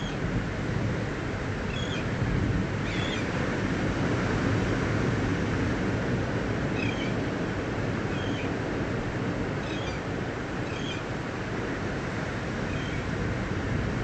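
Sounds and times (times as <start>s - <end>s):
ocean surf: 0.0s - 14.0s
wind: 0.0s - 14.0s.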